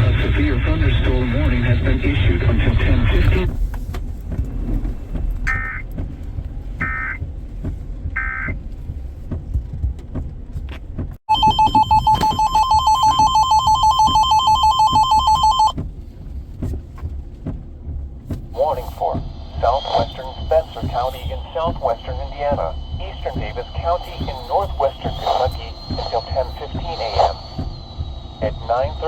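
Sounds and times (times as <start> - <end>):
low rumble: 0.0 - 29.0
weather radio warning alarm tone: 5.5 - 5.8, 6.8 - 7.2, 11.3 - 15.8, 18.6 - 29.0.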